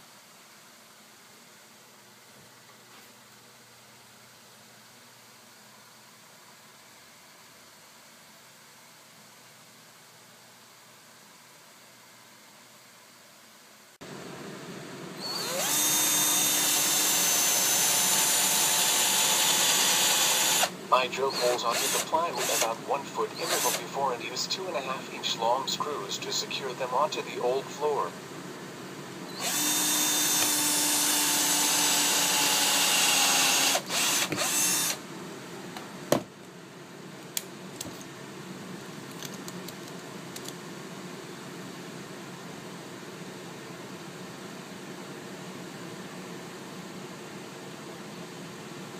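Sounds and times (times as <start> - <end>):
power drill whining: 15.2 - 23.9, 29.3 - 35.0.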